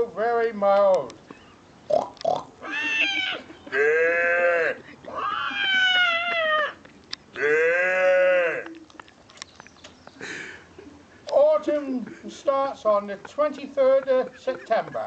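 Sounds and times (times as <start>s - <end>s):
man making meow-like cries: 2.6s - 6.8s, 7.4s - 8.8s.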